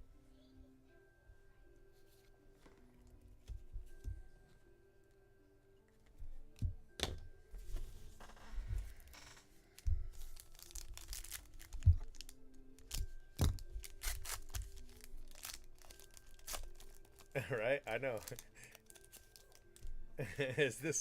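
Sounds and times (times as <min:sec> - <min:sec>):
quiet background music: 0:00.0 - 0:21.0
wrappers tearing and crinkling: 0:09.8 - 0:19.8.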